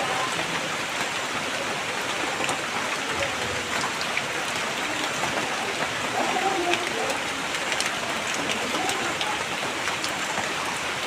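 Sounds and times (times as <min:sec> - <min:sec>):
steady rain: 0:00.0 - 0:11.0.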